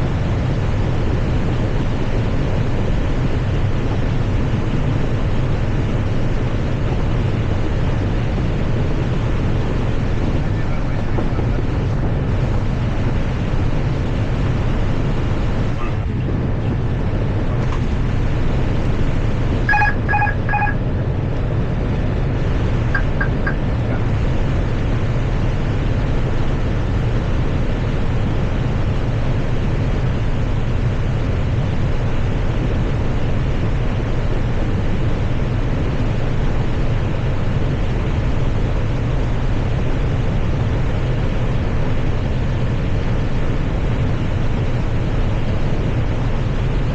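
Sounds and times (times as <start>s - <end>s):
airflow and engine rumble: 0.0s - 46.9s
faint high beeps: 19.7s - 20.8s, 23.0s - 23.6s
short electronic beeps: 19.7s - 20.8s, 23.0s - 23.7s.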